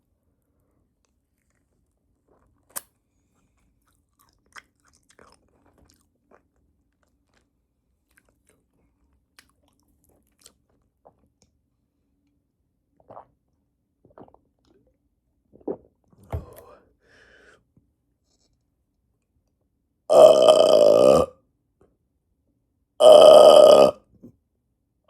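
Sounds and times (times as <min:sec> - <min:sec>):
person chewing crunchy bread: 0:01.0 - 0:11.3
wet mouth sounds: 0:13.0 - 0:13.4, 0:14.1 - 0:16.0.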